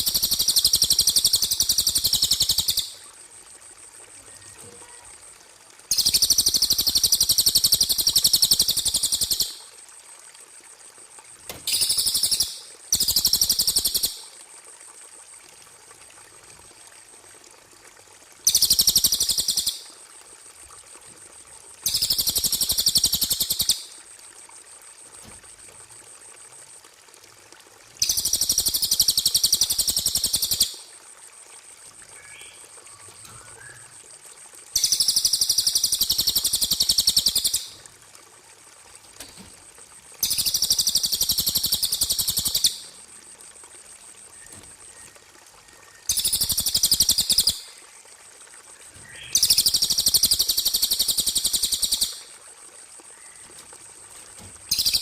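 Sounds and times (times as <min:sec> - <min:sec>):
faint steady high tone: 0:04.1 - 0:05.4, 0:32.1 - 0:34.0.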